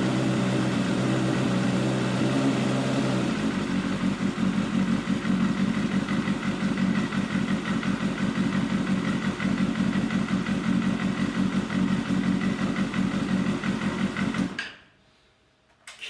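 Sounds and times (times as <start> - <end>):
motorcycle engine idling: 3.3 - 14.6.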